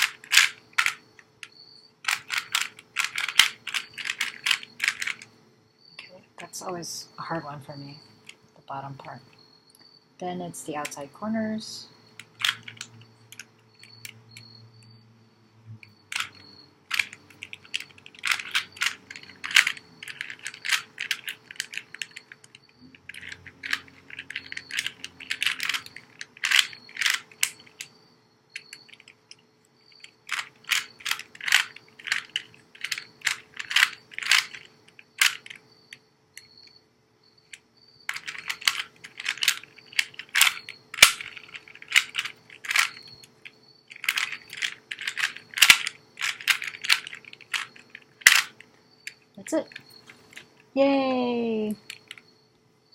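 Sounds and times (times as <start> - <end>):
plastic puzzle cube clicking: 0.0 - 5.3, 12.2 - 14.5, 16.1 - 27.9, 28.6 - 29.4, 30.0 - 35.6, 37.5 - 50.5, 51.8 - 52.2.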